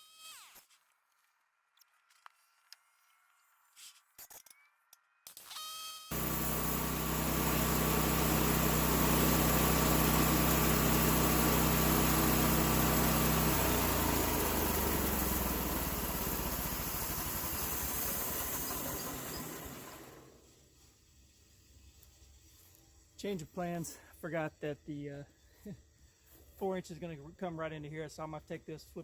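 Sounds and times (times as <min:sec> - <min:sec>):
small gasoline engine running: 0:06.1 - 0:22.7.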